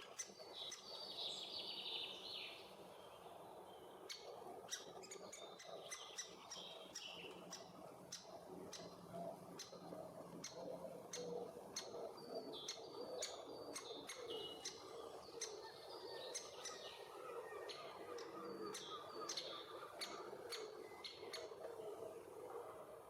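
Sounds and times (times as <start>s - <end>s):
birds' thin whistled songs: 0.0s - 23.0s.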